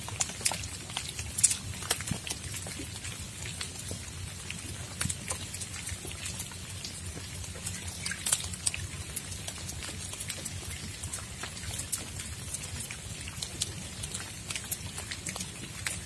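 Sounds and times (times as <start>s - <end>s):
raindrops ticking: 0.0s - 16.0s.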